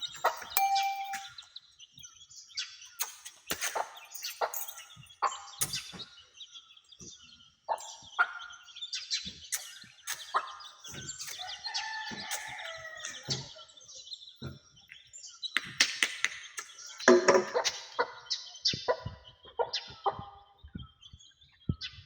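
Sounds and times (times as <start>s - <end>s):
chicks peeping: 3.3s - 15.6s, 16.3s - 22.0s.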